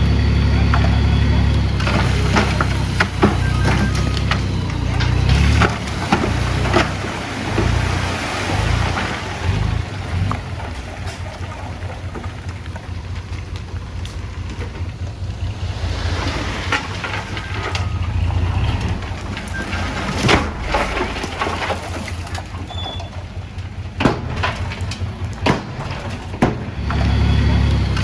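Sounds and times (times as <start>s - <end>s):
bulldozer diesel engine rumbling: 0.0s - 28.0s
metal clanks and knocks: 10.2s - 28.0s.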